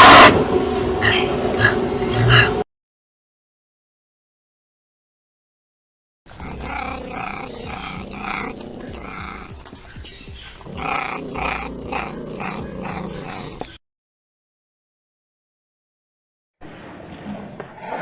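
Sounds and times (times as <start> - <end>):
wild cat rasping calls: 6.3 - 13.8.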